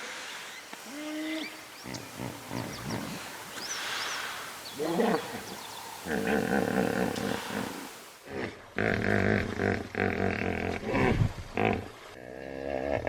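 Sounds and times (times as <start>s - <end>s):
small birds chirping: 0.2s - 8.1s
hippopotamus calling: 0.8s - 8.0s.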